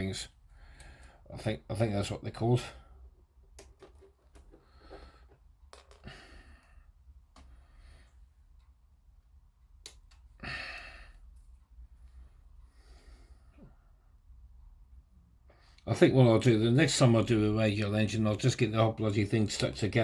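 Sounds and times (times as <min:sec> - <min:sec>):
low steady hum: 0:00.0 - 0:20.0
man breathing and sighing: 0:04.5 - 0:08.3, 0:10.4 - 0:14.2.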